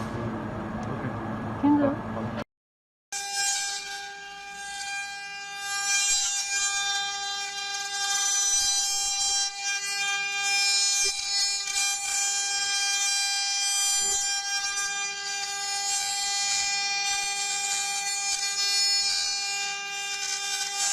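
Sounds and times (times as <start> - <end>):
router spindle motor whine: 3.2 - 20.9
cutting hiss: 5.9 - 20.9.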